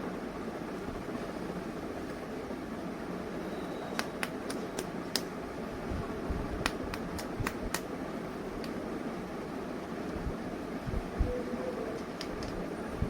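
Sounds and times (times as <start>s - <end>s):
steady background hiss: 0.0s - 13.0s.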